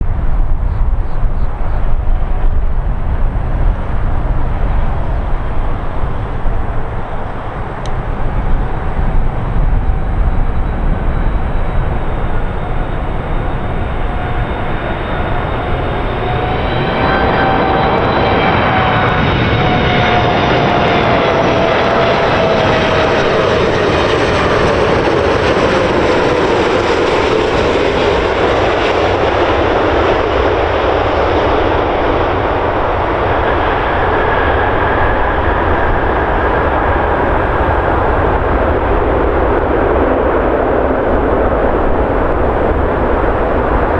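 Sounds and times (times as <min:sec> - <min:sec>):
jet engine whine falling: 0:00.0 - 0:43.9
jet engines rumbling: 0:00.0 - 0:43.9.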